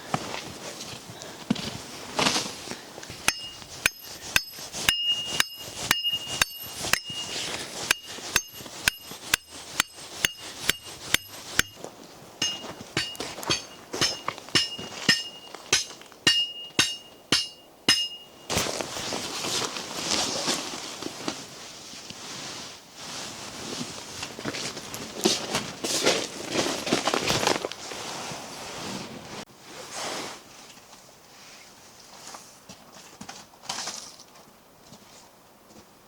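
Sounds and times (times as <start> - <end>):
metal-on-metal strikes ringing: 3.2 - 11.8, 12.4 - 18.6.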